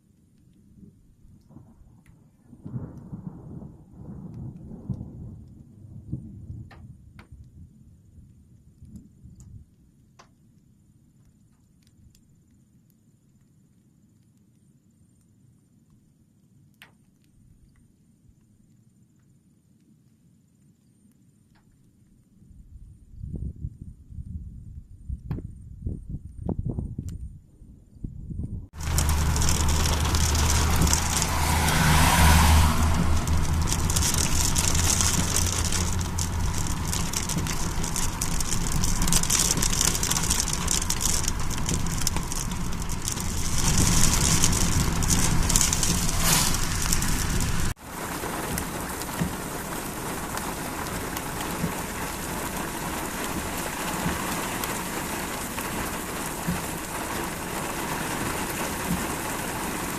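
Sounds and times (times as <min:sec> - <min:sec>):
steady rain falling: 0:00.0 - 0:12.5, 0:28.8 - 0:59.9
low hum: 0:28.8 - 0:47.8.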